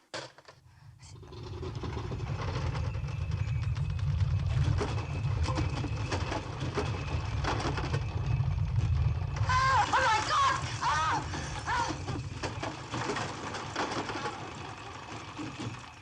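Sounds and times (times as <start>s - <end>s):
deep rumble: 0.6s - 13.4s
clicks and rattles: 1.2s - 16.0s.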